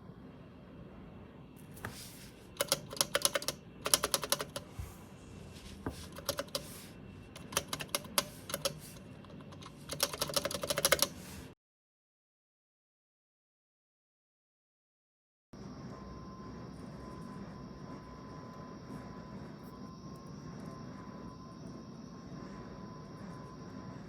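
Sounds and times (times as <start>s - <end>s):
mechanical keyboard key clacks: 2.6s - 4.6s, 7.4s - 11.2s.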